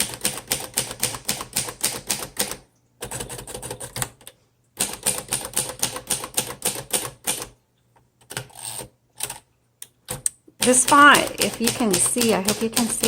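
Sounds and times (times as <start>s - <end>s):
typewriter keystroke clacks: 0.0s - 7.6s, 10.1s - 13.0s.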